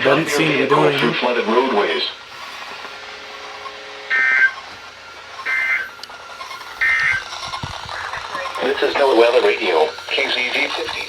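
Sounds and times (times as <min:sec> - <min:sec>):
warbling digital data tones: 0:03.5 - 0:11.0.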